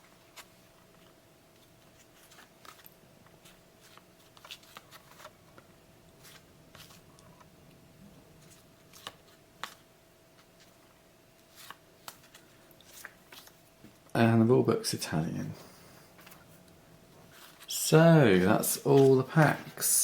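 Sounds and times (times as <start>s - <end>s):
faint steady hum: 0.0s - 20.0s
trading cards flipped through: 0.3s - 5.6s, 6.2s - 7.5s, 8.4s - 10.8s, 11.4s - 14.0s, 18.3s - 19.9s.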